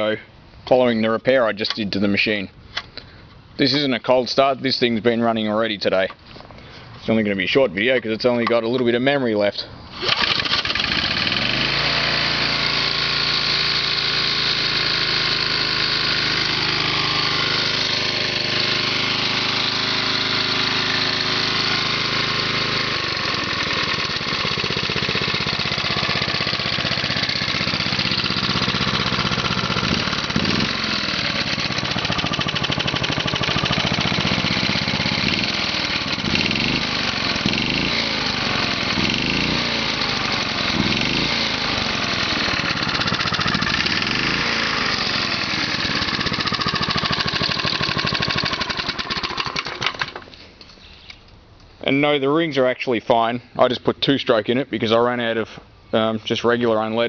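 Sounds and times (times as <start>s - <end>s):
lawn mower engine revving: 9.9s - 50.4s.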